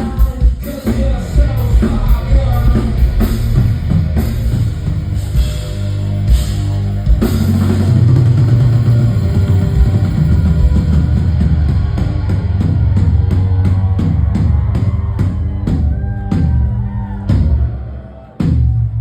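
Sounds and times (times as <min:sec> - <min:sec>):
distorted bass guitar: 0:00.9 - 0:17.6
drum hits: 0:01.0 - 0:06.6.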